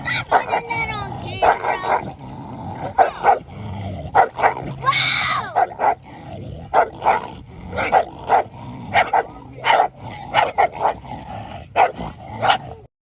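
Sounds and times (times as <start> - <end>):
dog barking: 0.1 - 0.8, 1.4 - 2.1, 2.8 - 3.4, 4.1 - 4.6, 5.4 - 6.0, 6.7 - 11.0, 11.8 - 12.8.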